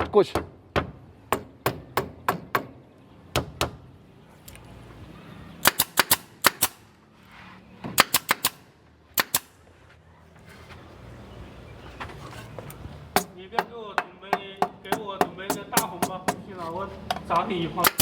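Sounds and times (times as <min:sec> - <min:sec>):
hammer striking wood: 0:00.0 - 0:03.8, 0:13.2 - 0:16.4.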